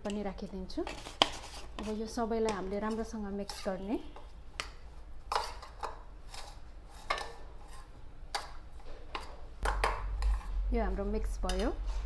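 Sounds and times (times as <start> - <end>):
spoon scraping a bowl: 2.8 - 4.2.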